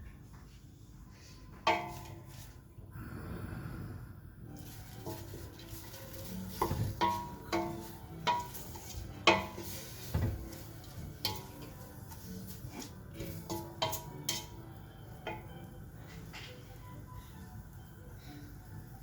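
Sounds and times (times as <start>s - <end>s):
spoon knocking in a metal pot: 1.7s - 2.2s, 5.0s - 12.0s, 12.6s - 15.7s.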